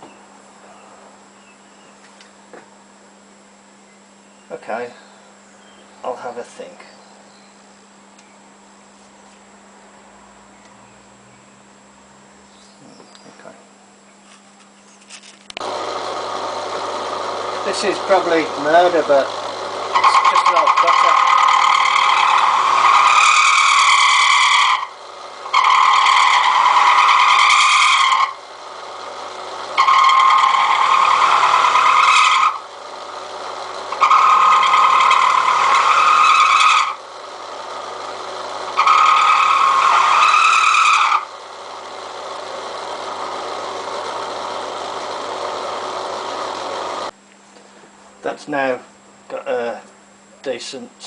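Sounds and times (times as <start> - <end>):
milling machine running: 15.6 - 47.1
milling cutter screeching on steel: 16.5 - 28.5, 29.8 - 32.8, 33.8 - 37.1, 38.6 - 41.3.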